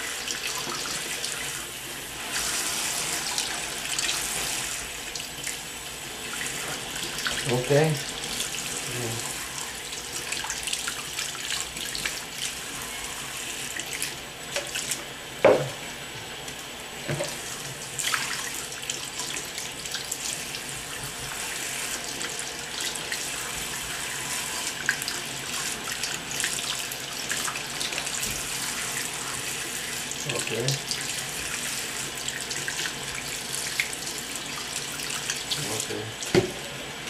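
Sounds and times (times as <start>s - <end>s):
faucet running into sink: 0.0s - 15.8s, 16.5s - 36.5s.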